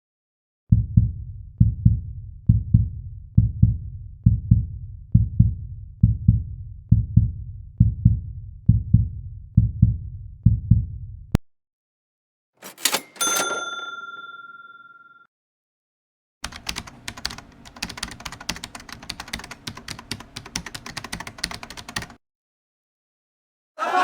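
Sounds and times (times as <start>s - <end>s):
heartbeat thumps: 0.7s - 11.4s
sharp click: 12.6s - 13.5s.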